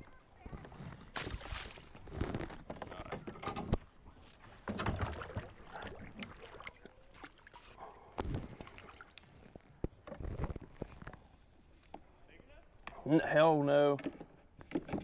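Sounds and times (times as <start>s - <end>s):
water splashing: 4.6s - 7.8s.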